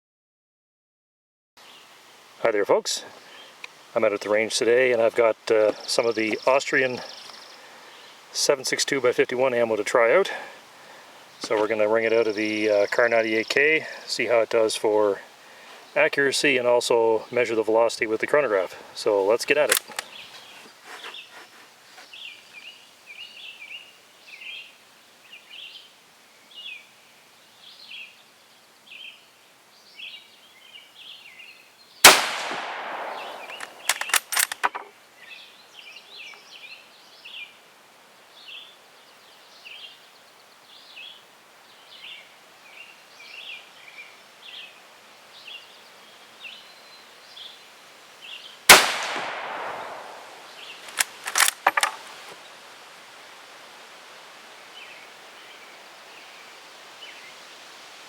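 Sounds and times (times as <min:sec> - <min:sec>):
birds chirping: 0:01.6 - 0:52.7, 0:54.0 - 0:57.6
rifle bolt metallic clicks: 0:19.7 - 0:20.1, 0:32.1 - 0:34.8, 0:50.9 - 0:52.0
rifle shots with echo: 0:32.1 - 0:33.9, 0:48.7 - 0:50.4.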